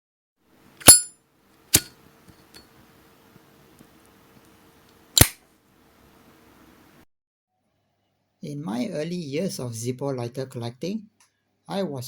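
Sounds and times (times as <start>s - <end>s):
lighter lid clicking: 5.2s - 5.4s.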